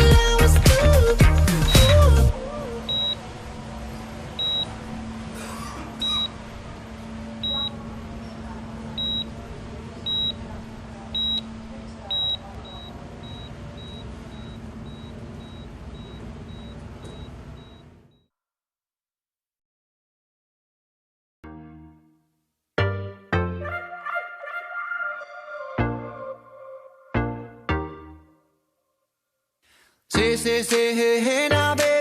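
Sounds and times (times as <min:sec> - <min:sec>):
steady low hum: 0:00.0 - 0:18.1
high-pitched electronic beeps: 0:02.9 - 0:03.2.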